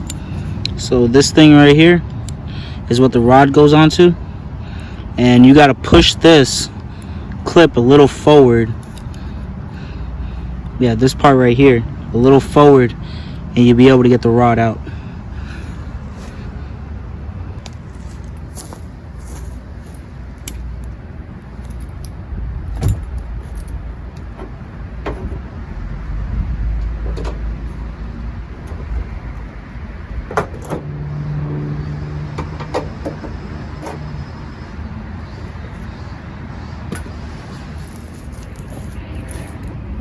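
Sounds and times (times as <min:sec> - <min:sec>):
low hum: 0:14.9 - 0:40.0
low rumble: 0:21.1 - 0:30.3.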